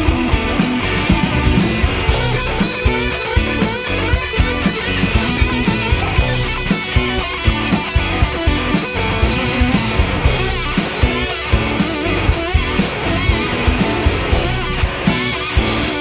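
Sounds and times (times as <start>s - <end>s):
drum kit steady beat: 0.0s - 16.0s
electric guitar playing rock: 0.0s - 16.0s.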